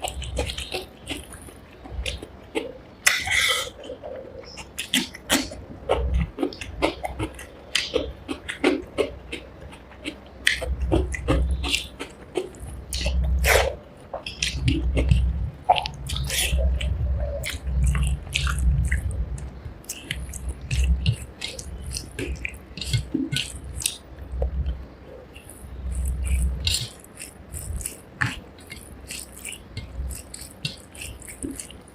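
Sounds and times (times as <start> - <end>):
chewing food: 0.0 - 31.9
mouth clicks and smacks: 0.0 - 31.9.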